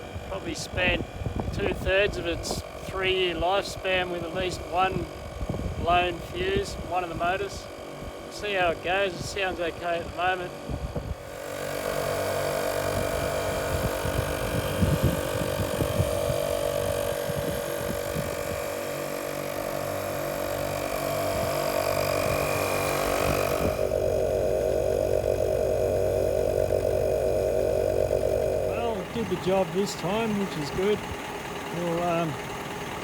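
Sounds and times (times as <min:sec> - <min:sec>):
air compressor motor hum: 0:00.0 - 0:33.0
air hissing: 0:11.1 - 0:33.0.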